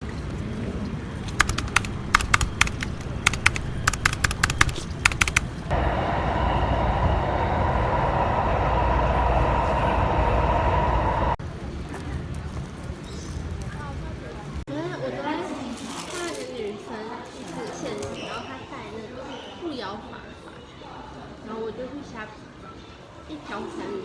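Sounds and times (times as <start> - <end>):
irregular sharp clicks: 1.3 - 5.7
steady rushing noise with rumble: 1.3 - 11.4.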